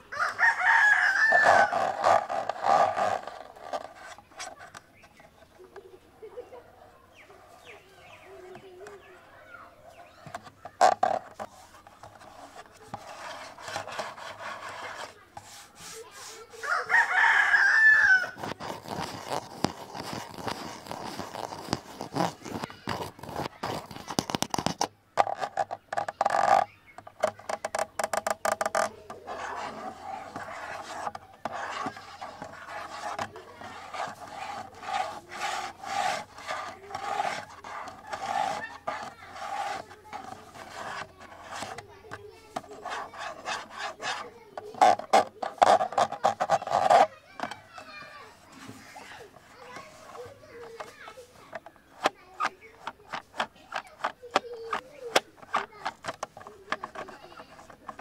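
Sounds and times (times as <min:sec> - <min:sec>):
rooster crowing: 0:00.1 - 0:01.8, 0:16.6 - 0:18.4
fingers tapping on camera body: 0:18.0 - 0:48.0.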